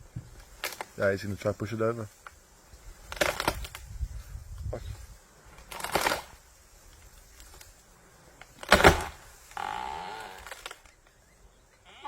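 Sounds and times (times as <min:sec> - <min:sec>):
tree trunk cracking: 0:00.3 - 0:01.1, 0:03.0 - 0:04.0, 0:05.5 - 0:07.8, 0:08.4 - 0:11.1
wood creaking: 0:08.4 - 0:12.0.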